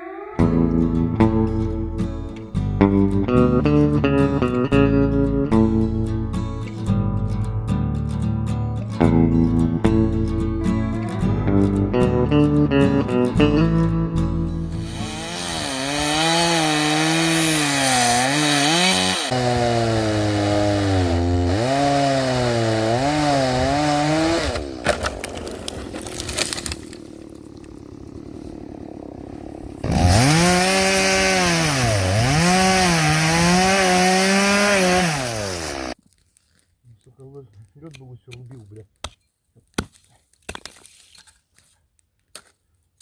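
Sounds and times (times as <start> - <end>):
small petrol engine under load: 24.5 - 31.0.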